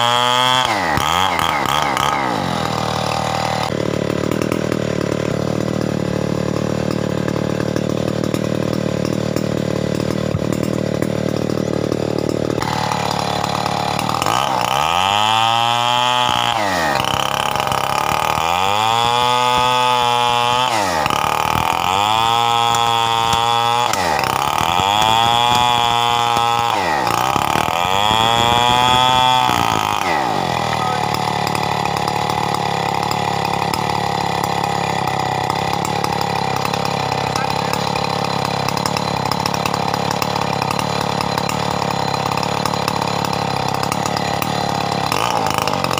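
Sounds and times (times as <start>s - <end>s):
chainsaw idling and revving: 0.0s - 45.9s.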